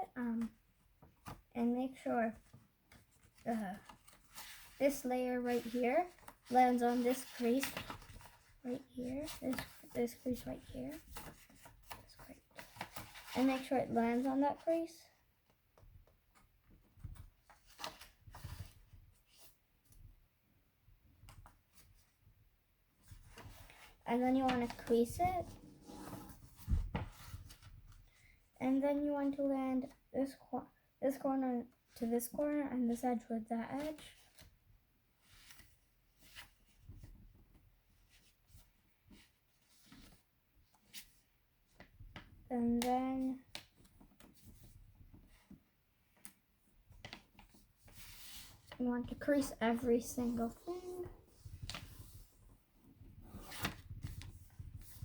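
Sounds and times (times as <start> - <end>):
paper rustling and crinkling: 2.4 - 14.5, 46.9 - 55.0
paper scrapes: 25.4 - 26.6.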